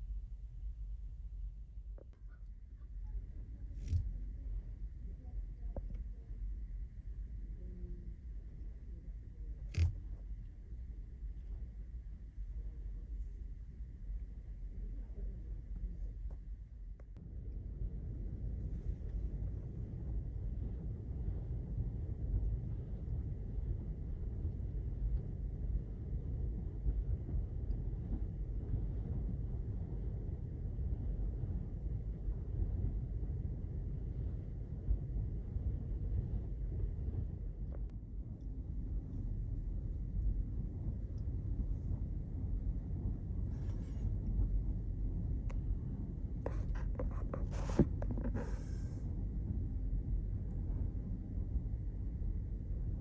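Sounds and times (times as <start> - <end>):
ferry engine low rumble: 0.0 - 53.0
short scrapes: 46.4 - 49.0
rustling and scratching: 46.5 - 49.0.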